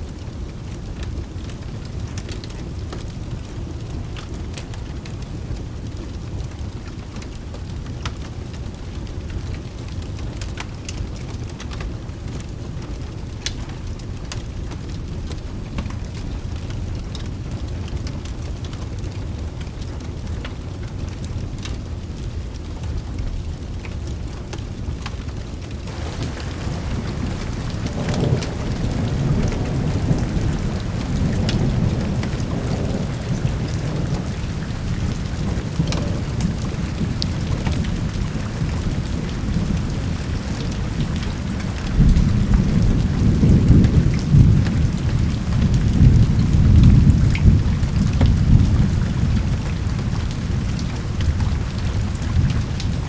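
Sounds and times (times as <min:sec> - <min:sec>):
steady rain: 0:00.0 - 0:53.0
rolling thunder: 0:25.9 - 0:53.0.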